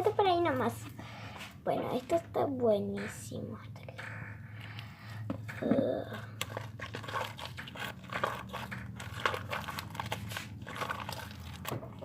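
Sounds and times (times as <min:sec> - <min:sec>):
slime squeezed crackling: 0:05.7 - 0:12.0.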